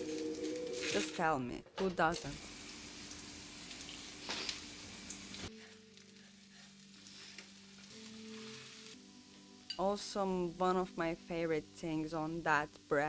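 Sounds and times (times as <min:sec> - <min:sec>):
bread sizzling in butter: 0:02.2 - 0:09.7.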